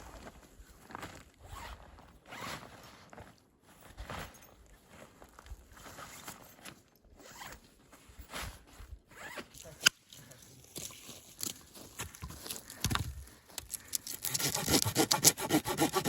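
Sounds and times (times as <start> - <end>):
zipper pulled: 1.5 - 2.7, 7.2 - 7.6.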